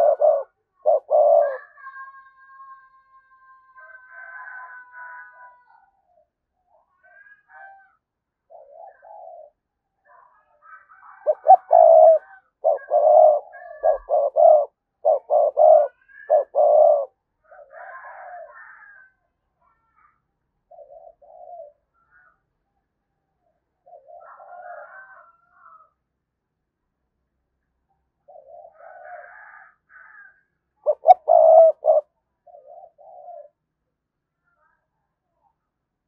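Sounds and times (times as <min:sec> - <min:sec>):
dove cooing: 0:00.0 - 0:02.7, 0:06.9 - 0:09.6, 0:10.6 - 0:19.0, 0:20.7 - 0:22.3, 0:23.8 - 0:26.0, 0:28.2 - 0:33.6.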